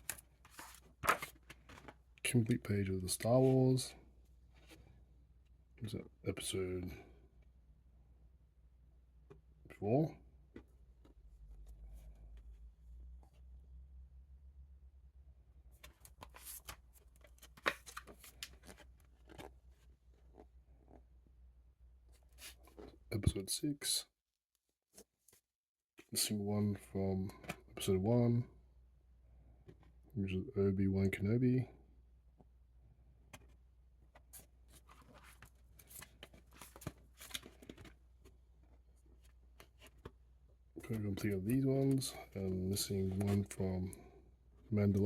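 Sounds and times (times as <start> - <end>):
album pages rustling and clicking: 0.0 - 3.6, 15.8 - 21.0, 33.3 - 40.2, 40.8 - 44.0.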